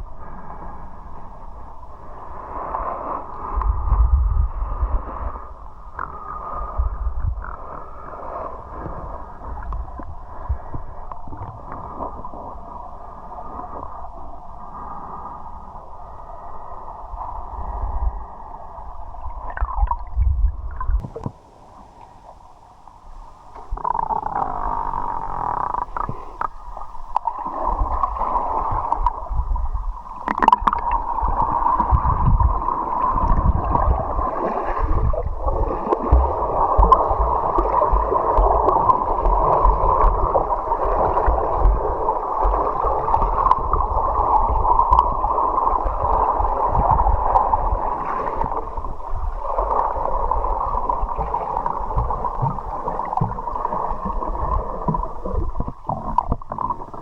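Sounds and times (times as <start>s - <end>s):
river water gurgling and rushing: 18.2s - 57.0s.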